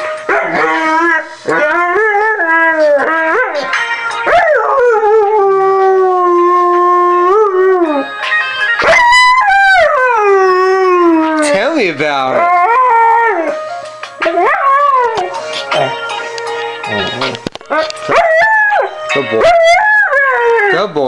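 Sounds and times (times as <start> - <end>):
dog howling: 0.3 - 8.1, 8.8 - 11.6, 17.2 - 20.8.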